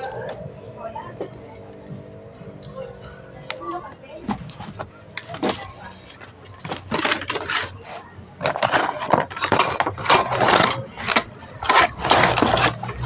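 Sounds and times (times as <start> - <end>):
tools and metal parts clattering: 4.2 - 13.0.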